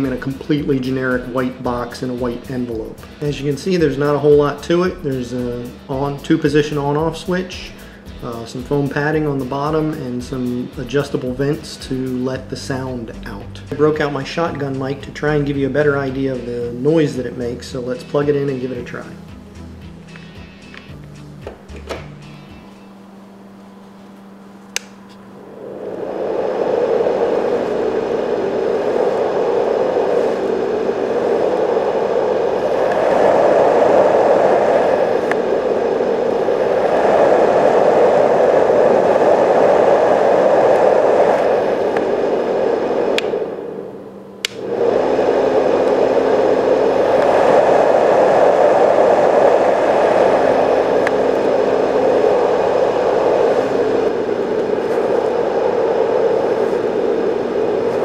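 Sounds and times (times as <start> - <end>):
fan rushing air: 0.0 - 58.0
switch clicking: 24.7 - 25.2, 44.4 - 44.6.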